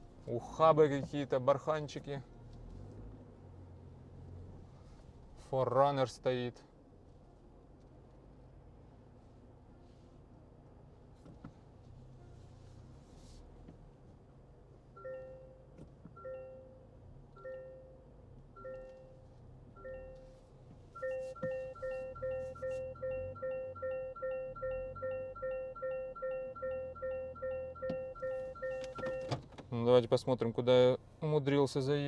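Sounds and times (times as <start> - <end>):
parking sensor beeping: 15.0 - 29.5.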